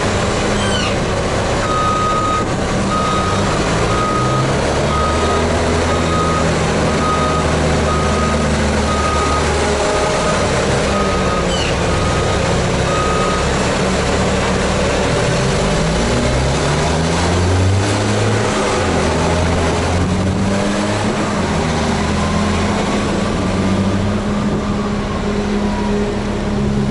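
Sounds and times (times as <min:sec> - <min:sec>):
diesel engine running: 0:00.0 - 0:26.9
reversing alarm beeping: 0:01.6 - 0:13.6.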